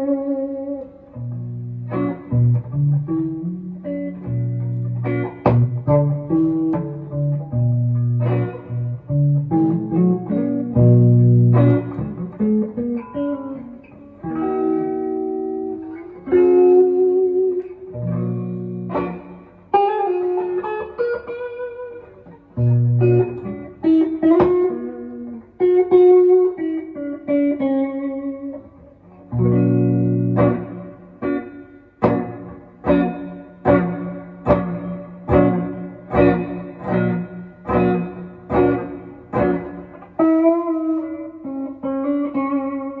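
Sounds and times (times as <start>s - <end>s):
electric guitar playing: 0.0s - 43.0s.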